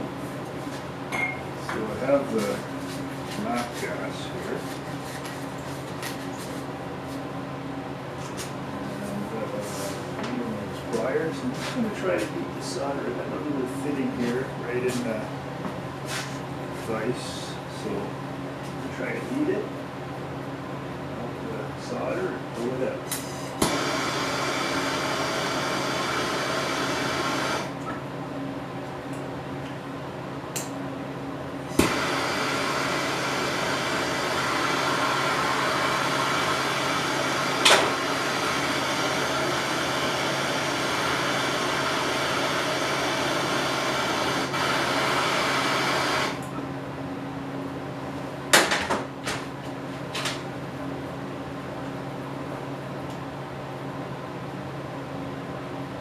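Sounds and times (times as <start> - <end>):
gas torch flame hissing: 23.6 - 27.8, 31.7 - 46.4.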